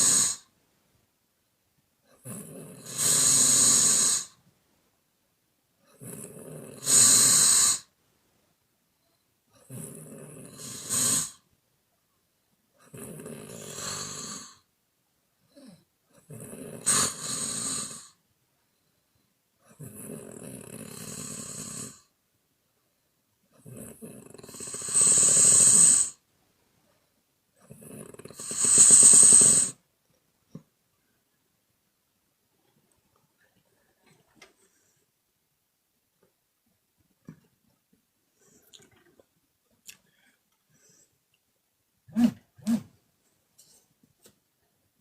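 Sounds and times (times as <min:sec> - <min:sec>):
woman snoring: 0:00.0 - 0:00.5, 0:02.1 - 0:04.4, 0:05.9 - 0:07.9, 0:09.6 - 0:11.4, 0:12.8 - 0:14.7, 0:15.5 - 0:18.2, 0:19.7 - 0:22.1, 0:23.6 - 0:26.2, 0:27.6 - 0:29.8, 0:42.1 - 0:42.9.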